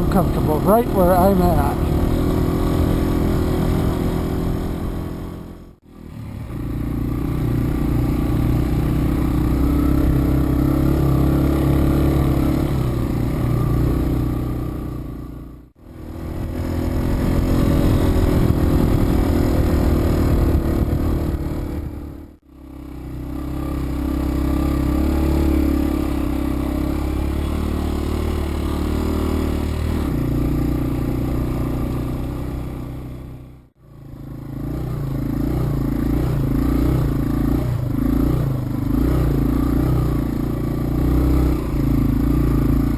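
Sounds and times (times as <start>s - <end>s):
motorcycle engine running: 0.0s - 42.9s
wind: 0.0s - 42.9s.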